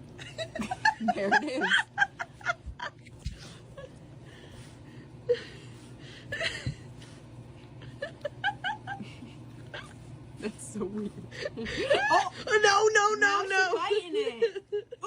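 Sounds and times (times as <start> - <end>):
giggles: 0.1 - 4.5, 5.2 - 10.1.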